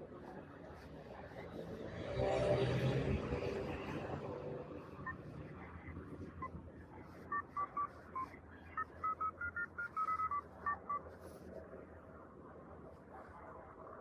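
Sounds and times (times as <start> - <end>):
phone keypad two-tone beeps: 8.8 - 11.0.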